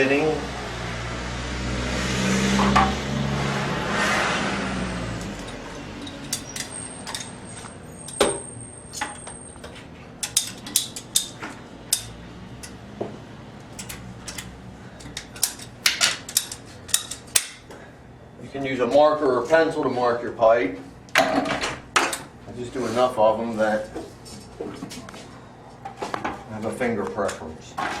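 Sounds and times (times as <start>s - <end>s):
clicks of plastic pipe fittings: 5.4s - 8.4s, 9.0s - 12.8s, 13.6s - 17.6s.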